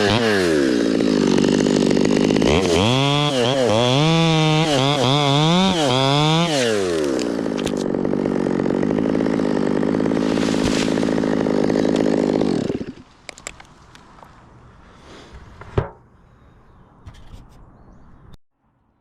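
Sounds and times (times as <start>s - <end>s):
chainsaw revving and idling: 0.0s - 13.1s.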